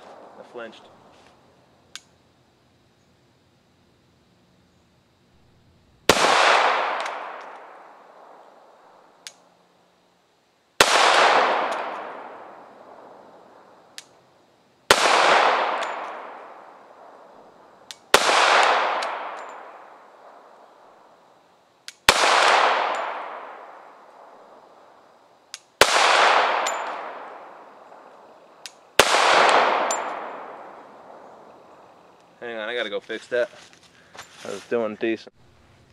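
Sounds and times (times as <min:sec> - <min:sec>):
pistol shots with echo: 0:06.1 - 0:09.0, 0:10.8 - 0:13.3, 0:14.9 - 0:17.2, 0:17.9 - 0:20.4, 0:22.0 - 0:24.6, 0:25.8 - 0:28.1, 0:29.0 - 0:31.5.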